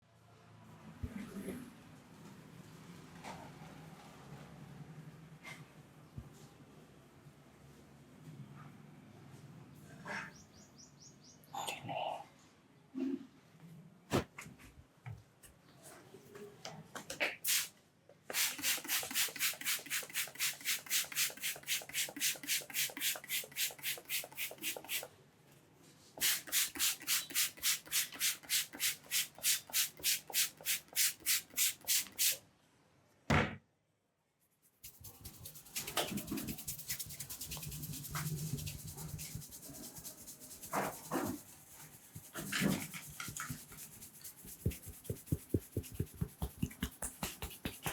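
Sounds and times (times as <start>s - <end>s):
hands rubbing hair and scalp: 18.3s - 25.1s, 26.2s - 32.4s, 34.6s - 47.9s.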